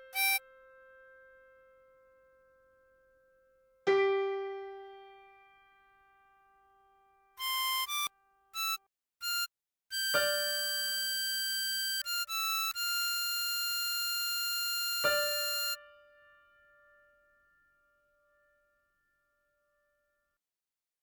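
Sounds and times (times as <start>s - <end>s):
harmonica melody: 0.0s - 0.4s, 7.4s - 16.0s.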